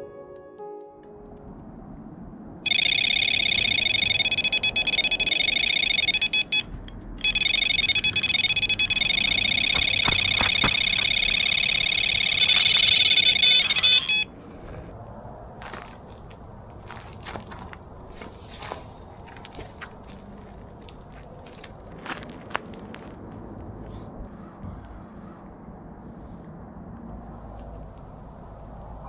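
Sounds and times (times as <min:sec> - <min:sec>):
fishing bite alarm warbling: 0:02.7 - 0:06.6, 0:07.2 - 0:14.3.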